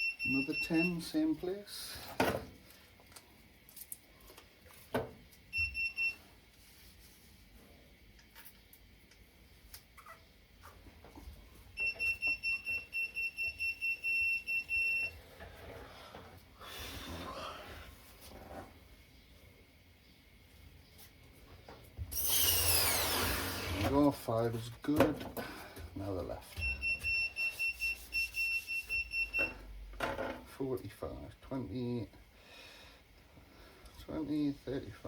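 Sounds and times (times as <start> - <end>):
wheel balancer beeping: 0.0 - 1.1, 11.8 - 15.2, 26.6 - 29.8.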